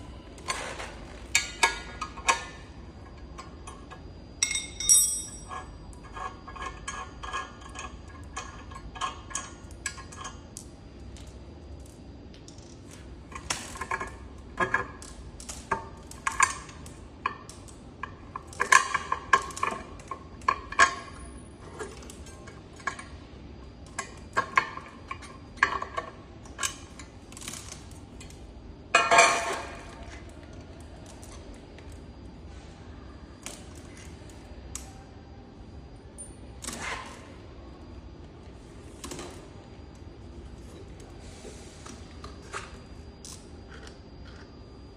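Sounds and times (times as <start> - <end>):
metallic clinks of tools: 4.4 - 5.5.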